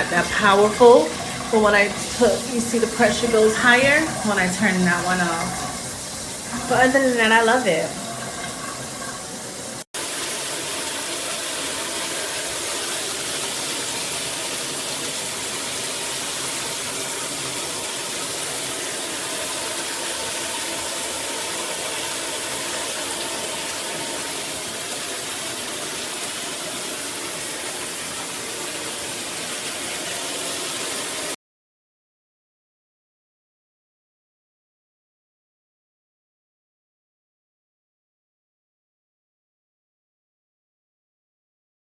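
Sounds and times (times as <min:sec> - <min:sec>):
water spraying from shower head: 0:00.0 - 0:31.4.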